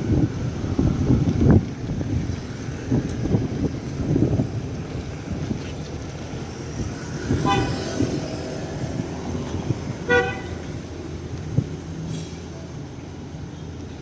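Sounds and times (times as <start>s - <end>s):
traffic rumble: 0.0s - 14.0s
car horn toots: 7.4s - 8.0s, 10.0s - 10.8s.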